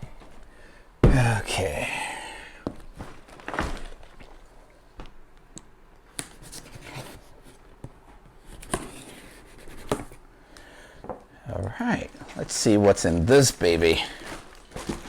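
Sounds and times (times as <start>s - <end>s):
cardboard box being handled: 14.2s - 15.0s.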